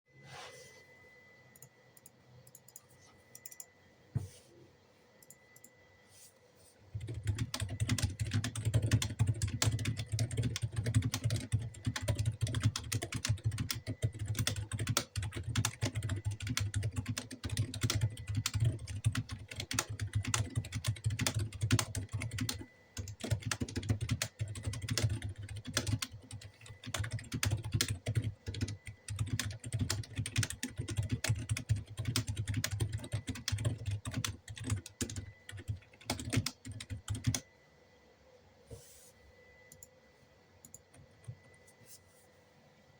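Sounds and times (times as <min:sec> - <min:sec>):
typing on mechanical keyboard: 0:07.0 - 0:37.4.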